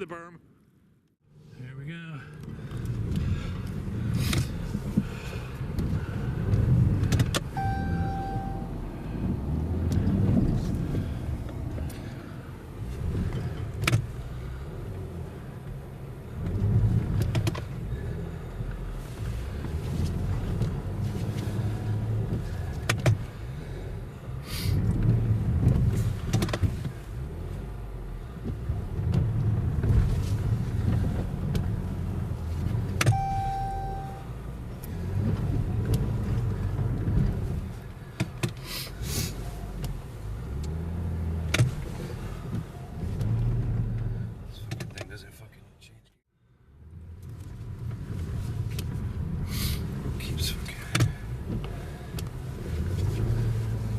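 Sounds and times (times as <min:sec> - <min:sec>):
car engine revving: 0:02.4 - 0:38.2, 0:46.8 - 0:53.9
short beep: 0:07.6 - 0:08.8, 0:33.1 - 0:34.4.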